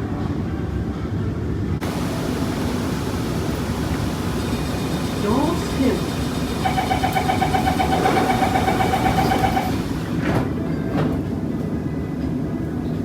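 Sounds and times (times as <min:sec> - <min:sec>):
steady train hum: 0:00.0 - 0:13.0
fast pulsing warning beep: 0:01.8 - 0:10.2
train doors shutting: 0:01.8 - 0:13.0.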